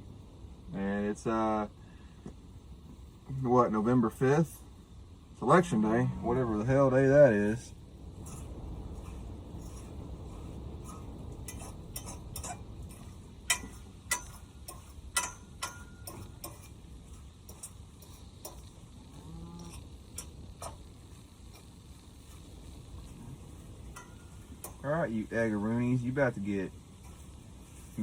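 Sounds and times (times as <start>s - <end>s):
low steady rumble: 0.0s - 28.0s
cooking gear clicking and tapping: 8.1s - 28.0s.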